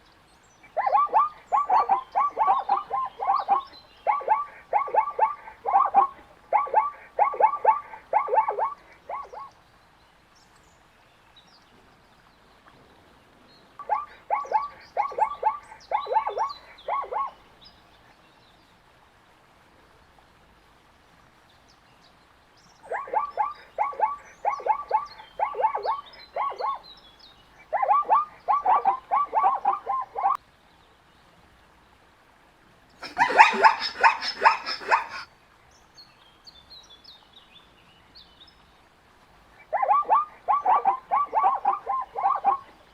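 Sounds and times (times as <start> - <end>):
bird chirps: 0.6 - 9.5, 33.0 - 35.3
zebra barking: 0.8 - 9.5, 13.8 - 17.3, 22.9 - 26.8, 27.7 - 30.4, 33.0 - 35.3, 39.6 - 42.7.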